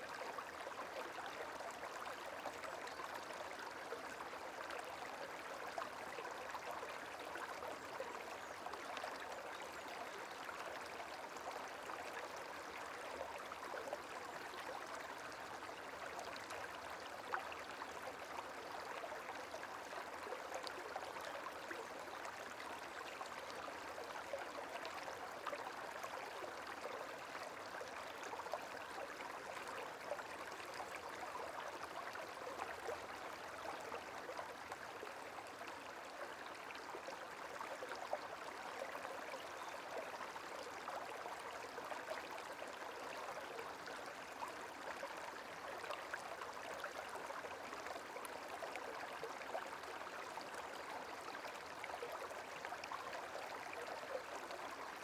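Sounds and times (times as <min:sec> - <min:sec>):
running water babbling: 0:00.0 - 0:55.0.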